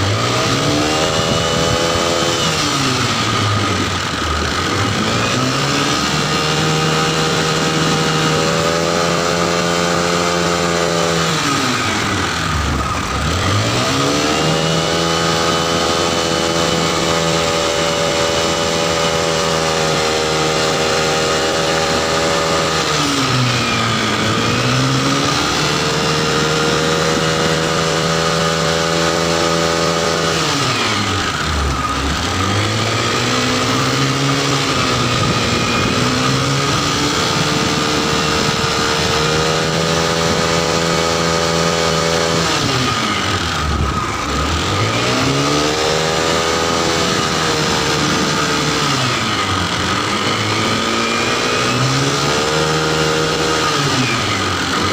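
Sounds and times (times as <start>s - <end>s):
scooter engine revving: 0.0s - 54.9s
steady high whine: 0.0s - 54.9s.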